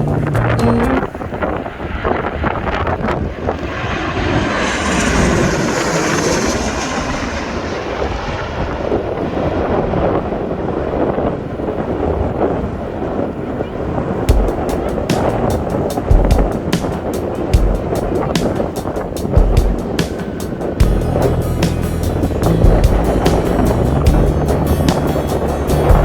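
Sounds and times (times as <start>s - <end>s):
jet airliner rumble overhead: 1.1s - 21.5s
high jet fan whine: 14.1s - 26.0s.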